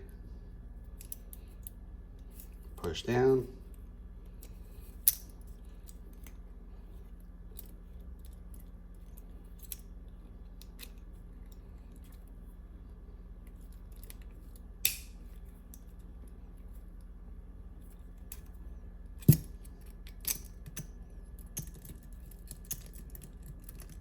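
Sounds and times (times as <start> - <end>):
metallic clicks in handcuff lock: 1.0 - 1.8, 4.4 - 6.4, 7.5 - 9.9, 10.6 - 12.2, 13.5 - 15.9, 19.2 - 24.0.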